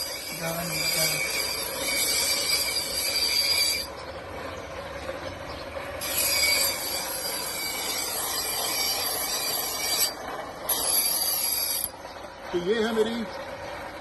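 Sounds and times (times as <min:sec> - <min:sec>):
knife grinding on sharpening wheel: 0:00.0 - 0:03.9, 0:06.0 - 0:11.9.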